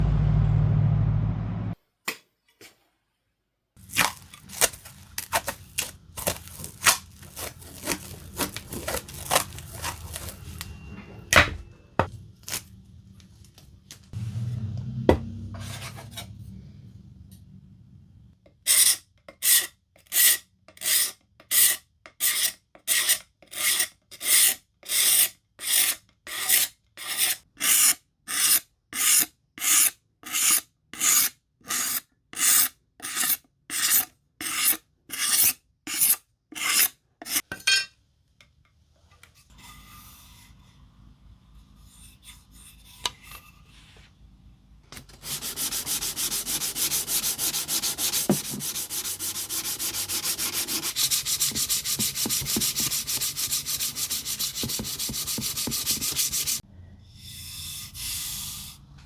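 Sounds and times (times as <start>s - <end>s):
low hum: 0.0s - 1.8s, 4.3s - 18.3s
rasp strokes on wood: 3.9s - 10.4s, 45.1s - 56.6s.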